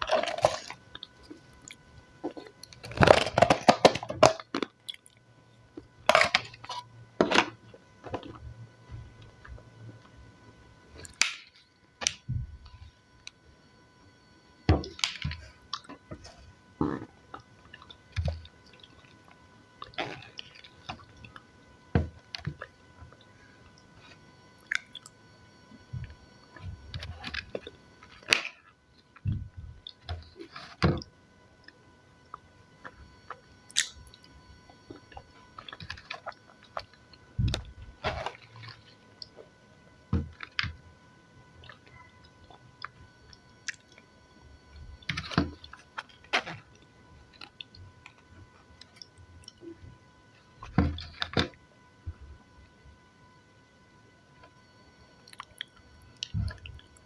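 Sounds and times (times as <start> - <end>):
person chewing salad: 24.6 - 25.1, 33.7 - 34.3, 41.6 - 44.0, 55.2 - 57.0.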